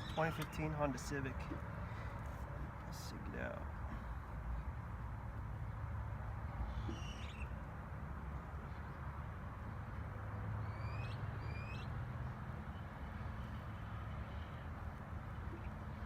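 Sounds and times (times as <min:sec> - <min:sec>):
bird calling: 0:00.0 - 0:00.8, 0:06.6 - 0:07.6.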